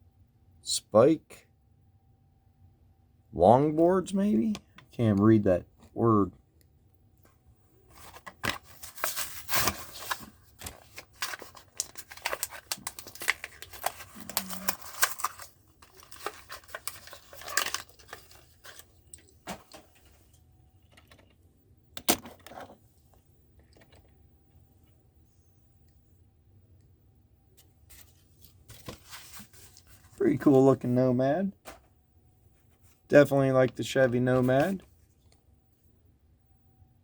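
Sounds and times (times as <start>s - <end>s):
cardboard ripping: 8.2s - 18.8s.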